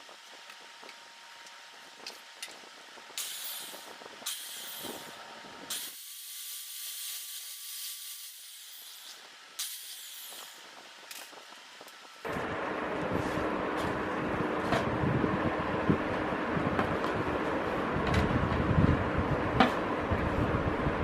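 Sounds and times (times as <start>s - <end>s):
electric drill boring: 3.2s - 12.2s.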